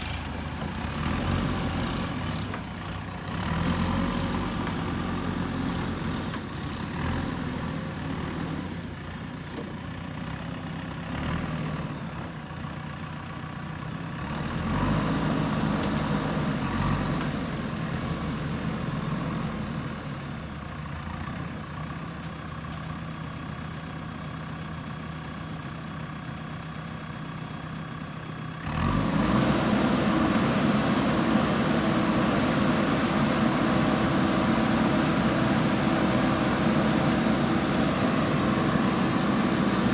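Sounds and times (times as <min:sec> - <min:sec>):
backhoe diesel engine running: 0:00.0 - 0:39.9.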